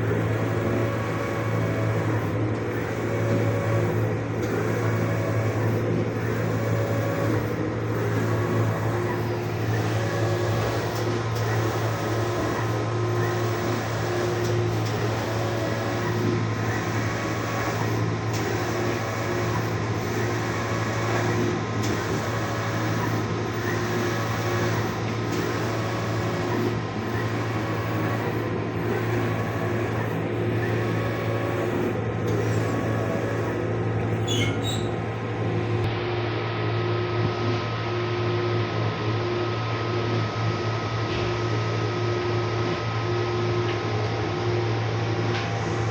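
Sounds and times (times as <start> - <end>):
printing machine humming: 0.0 - 35.9
pulsing machine tone: 27.2 - 35.8
high squeaks: 34.0 - 35.7.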